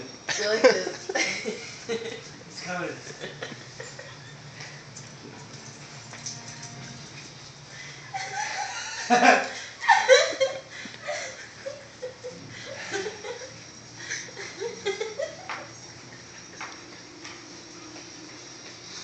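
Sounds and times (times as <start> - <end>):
person laughing: 8.1 - 13.5.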